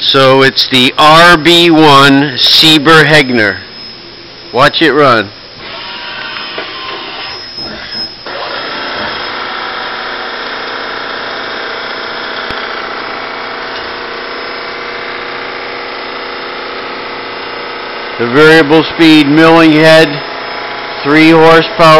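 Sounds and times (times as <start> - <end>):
milling machine hum: 0.0 - 21.9.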